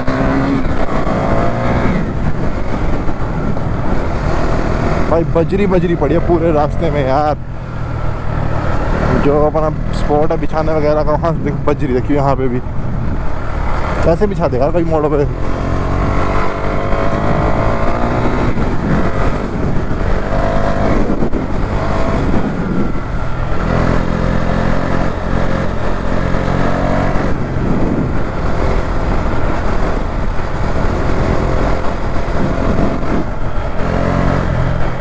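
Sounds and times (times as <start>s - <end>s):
motorcycle engine revving: 0.0s - 35.0s
wind rushing: 0.0s - 35.0s.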